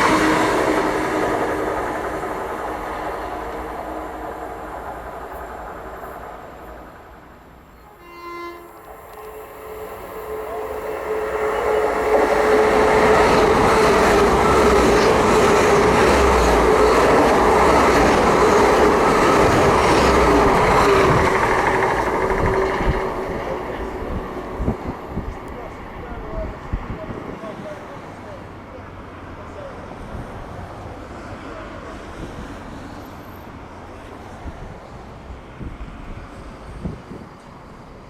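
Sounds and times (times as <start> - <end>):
train horn blast: 0.0 - 1.4, 7.8 - 18.2
diesel train engines: 0.0 - 38.0
train passing: 0.0 - 38.0
wheel and rail noise: 0.0 - 38.0.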